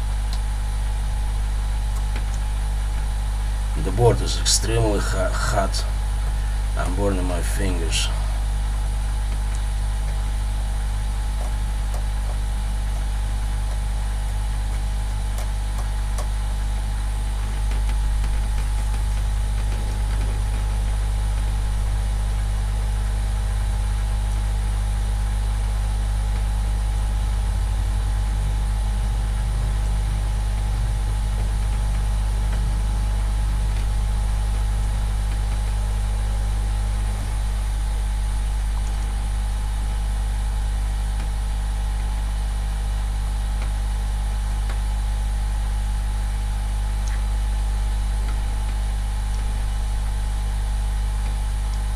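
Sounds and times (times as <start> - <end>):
hot air blower droning: 2.5 - 11.3.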